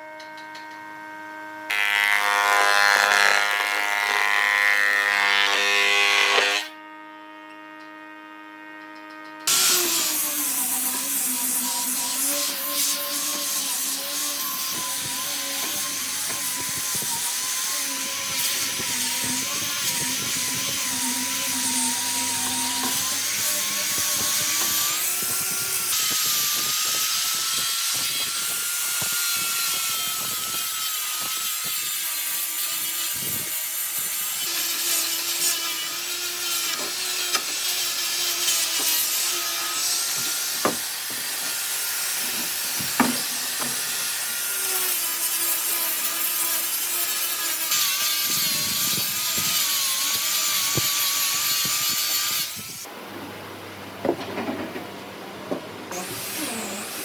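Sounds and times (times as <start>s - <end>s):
wood grinding or sanding: 1.7s - 52.9s, 55.9s - 57.0s
power tool motor whine: 5.6s - 31.9s, 33.1s - 52.9s, 55.9s - 57.0s
sharp knocks: 40.2s - 41.6s, 42.3s - 43.9s.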